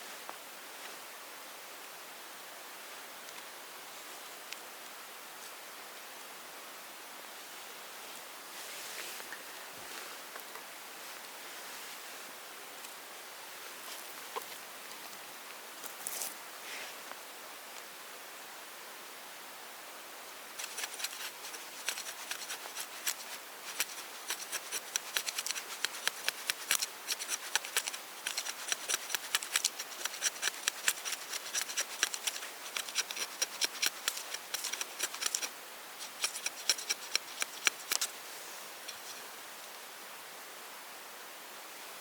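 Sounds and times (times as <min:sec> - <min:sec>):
small crisp clicks and scrapes: 0:20.6 - 0:38.2, 0:38.8 - 0:39.2.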